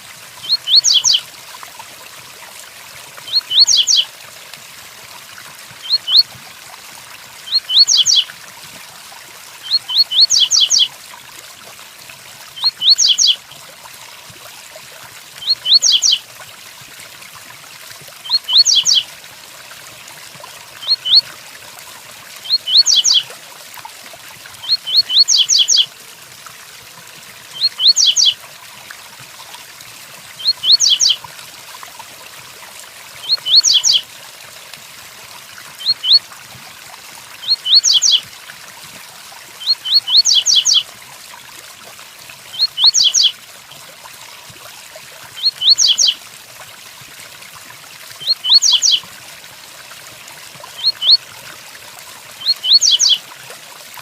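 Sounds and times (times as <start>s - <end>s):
bird singing high notes: 0.4s - 1.2s, 30.6s - 31.2s.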